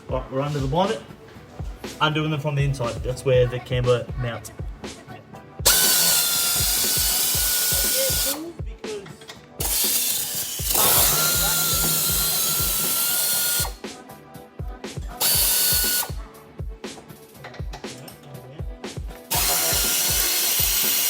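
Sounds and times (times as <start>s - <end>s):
background music with beat: 0.0s - 21.0s
power tool whining: 5.6s - 8.4s, 9.6s - 13.8s, 15.2s - 16.2s, 19.3s - 21.0s.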